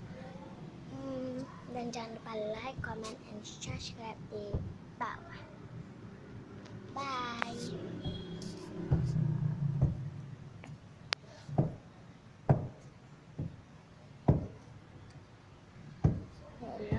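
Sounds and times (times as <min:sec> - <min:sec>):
dull knocks: 0:09.8 - 0:10.1, 0:11.5 - 0:11.8, 0:12.5 - 0:12.8, 0:14.3 - 0:14.6, 0:16.0 - 0:16.3.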